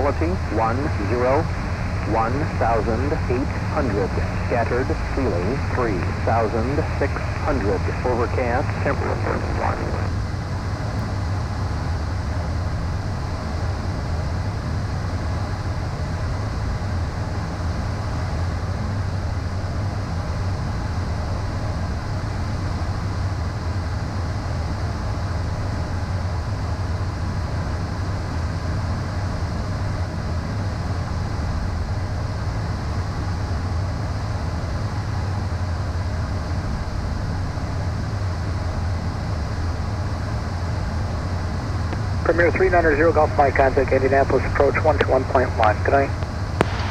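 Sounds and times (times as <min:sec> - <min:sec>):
faint steady tones: 0:00.0 - 0:13.8, 0:34.5 - 0:46.9
jet cockpit airflow and engine hum: 0:00.0 - 0:46.9.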